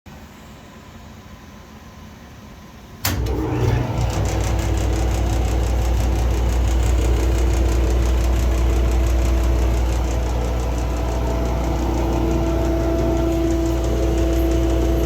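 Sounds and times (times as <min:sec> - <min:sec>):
jointer running: 0:03.1 - 0:15.0.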